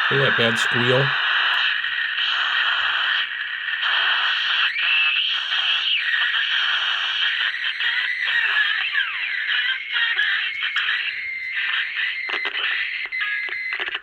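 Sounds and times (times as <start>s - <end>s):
radio hiss: 0.0s - 14.0s
steady high whistle: 4.5s - 14.0s
whistle bending in pitch: 4.6s - 14.0s.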